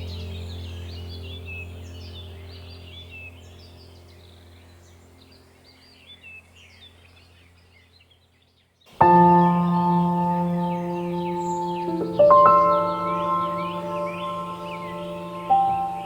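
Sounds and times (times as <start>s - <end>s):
small birds chirping: 0.0s - 16.0s
low steady hum: 9.0s - 16.0s.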